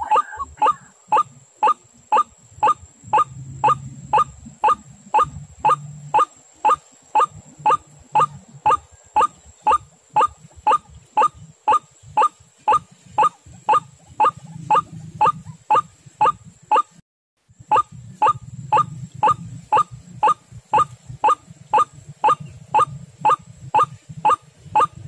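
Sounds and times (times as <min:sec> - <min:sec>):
waterhen calling: 0:00.0 - 0:16.9, 0:17.6 - 0:25.0
faint high whine: 0:00.0 - 0:25.0.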